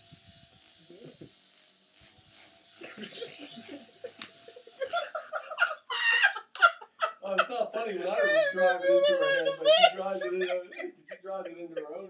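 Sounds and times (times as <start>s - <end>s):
toy helicopter motor whining: 0.0s - 5.5s, 9.9s - 10.3s
laughter: 2.8s - 12.0s.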